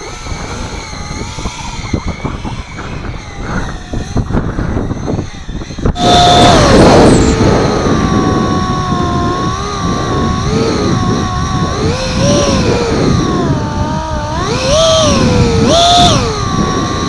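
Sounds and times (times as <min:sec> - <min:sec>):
model airplane motor whining: 0:00.0 - 0:17.0
wind buffeting microphone: 0:00.0 - 0:17.0.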